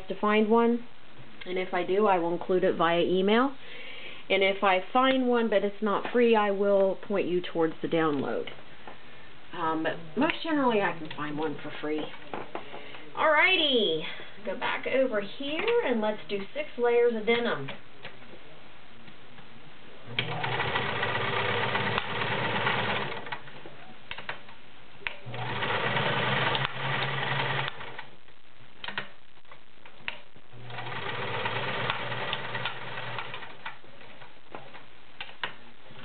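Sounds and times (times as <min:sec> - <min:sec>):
sewing machine stitching: 0:20.1 - 0:23.4, 0:25.2 - 0:28.0, 0:30.6 - 0:33.7
clicks: 0:23.3 - 0:25.2, 0:28.8 - 0:30.4.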